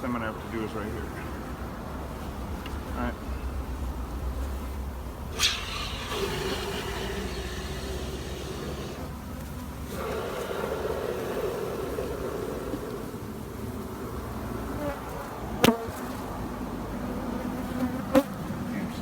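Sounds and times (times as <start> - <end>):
bees buzzing: 5.3 - 15.8.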